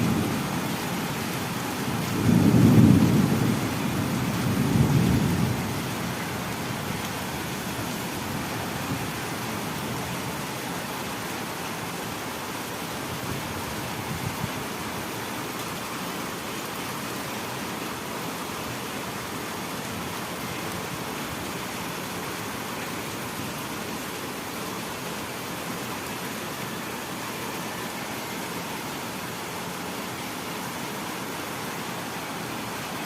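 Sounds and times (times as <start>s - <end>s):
heavy rain hissing: 0.0s - 16.4s.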